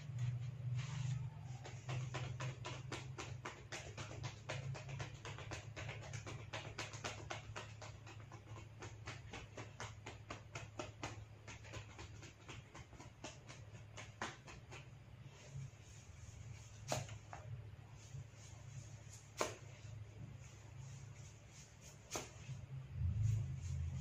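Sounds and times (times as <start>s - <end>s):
low hum: 22.6s - 24.0s.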